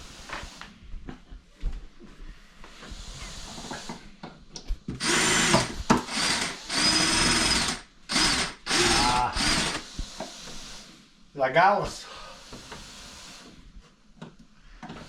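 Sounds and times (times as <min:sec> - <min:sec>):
power drill whining: 0:05.0 - 0:10.7.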